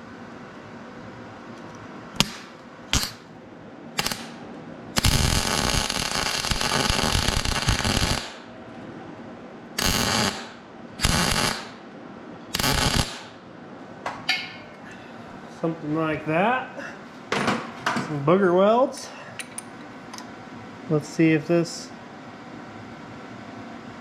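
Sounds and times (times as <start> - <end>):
arc welding: 2.2 - 3.3, 3.9 - 8.5, 9.8 - 11.8, 12.5 - 13.4.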